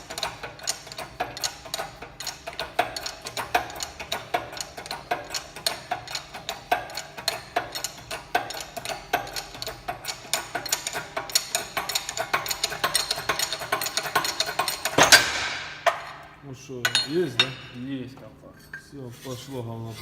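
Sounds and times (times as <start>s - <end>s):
rapid metallic clicking: 0.0s - 16.0s.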